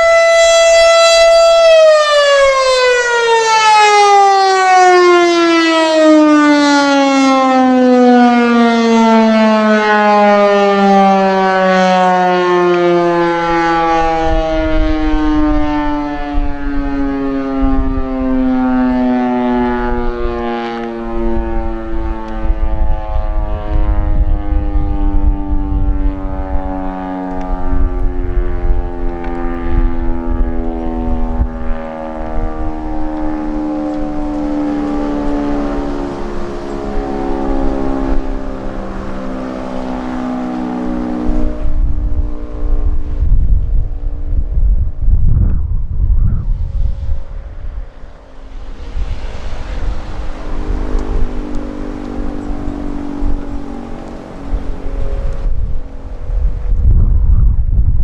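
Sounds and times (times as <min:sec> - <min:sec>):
siren wail falling in pitch: 0:00.0 - 0:58.0
wind rumble on microphone: 0:12.4 - 0:58.0.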